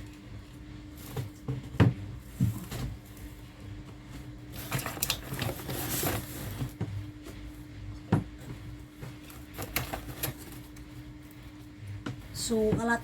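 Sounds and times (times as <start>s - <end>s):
packaging rustling: 4.5s - 6.7s.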